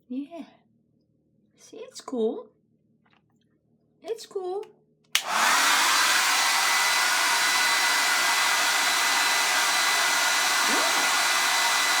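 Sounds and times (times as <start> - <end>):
hair dryer running: 5.2 - 12.0.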